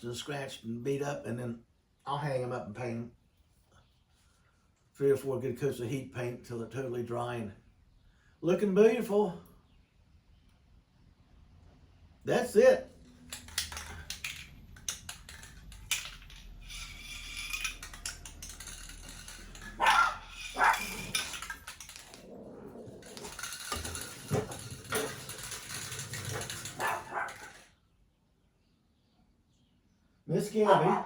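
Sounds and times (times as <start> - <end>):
dog barking: 19.8 - 21.1, 26.8 - 27.5, 30.6 - 31.0.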